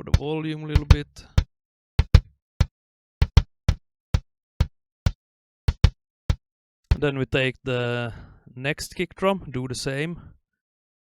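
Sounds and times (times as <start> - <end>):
kick drum hits: 0.0 - 7.0.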